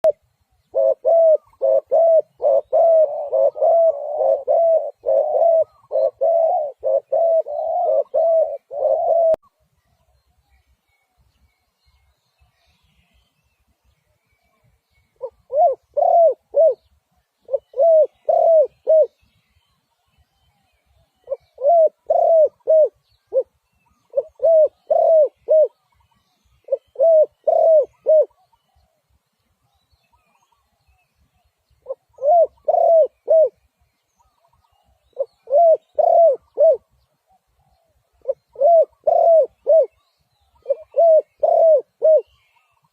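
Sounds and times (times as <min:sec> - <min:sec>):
dove cooing: 0:00.0 - 0:09.5, 0:15.2 - 0:19.3, 0:21.2 - 0:26.0, 0:26.6 - 0:29.0, 0:31.8 - 0:33.6, 0:34.2 - 0:42.9.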